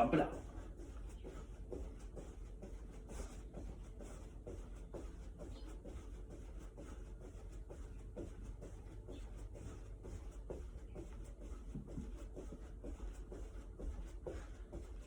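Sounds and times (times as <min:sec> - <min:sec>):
feet thudding during jumping jacks: 0:00.0 - 0:15.0.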